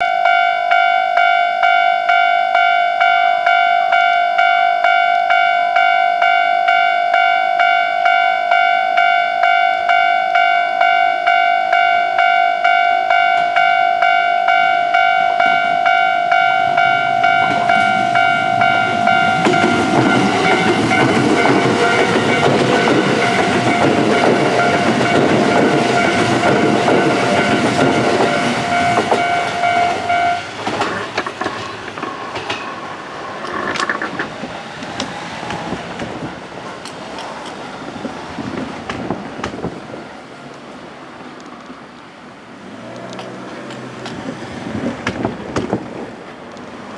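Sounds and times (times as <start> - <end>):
level-crossing warning bell ringing: 0.0 - 34.2
electric train running: 14.0 - 41.7.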